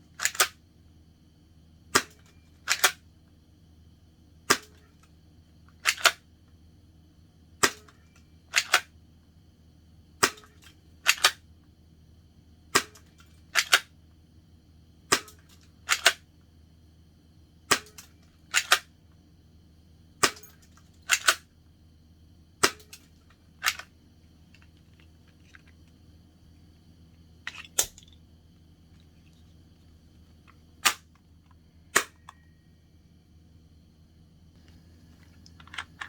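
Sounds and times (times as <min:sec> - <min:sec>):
airsoft pistol plastic clacks: 0:00.2 - 0:00.6, 0:02.0 - 0:03.0, 0:05.8 - 0:06.2, 0:07.6 - 0:08.9, 0:12.8 - 0:13.9, 0:15.1 - 0:16.2, 0:17.7 - 0:18.9, 0:20.2 - 0:21.4, 0:22.6 - 0:23.9.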